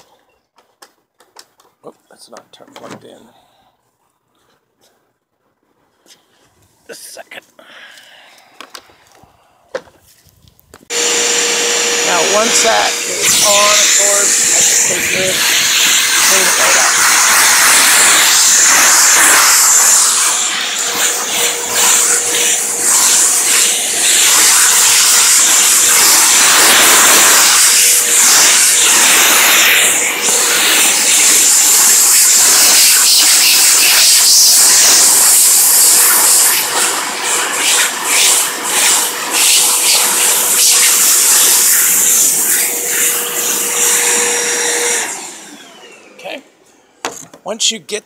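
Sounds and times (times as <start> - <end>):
vacuum cleaner suction: 10.9 - 46.4.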